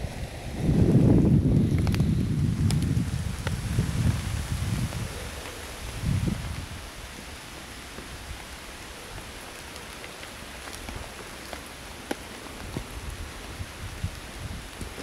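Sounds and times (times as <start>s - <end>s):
rain on plastic sheet: 0.0s - 15.0s.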